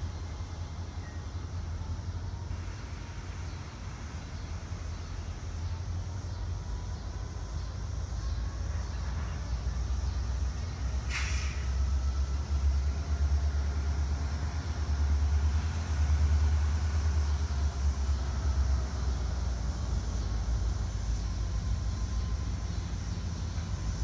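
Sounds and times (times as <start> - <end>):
diesel locomotive engine rumble: 0.0 - 24.0
brief hiss: 11.0 - 11.9.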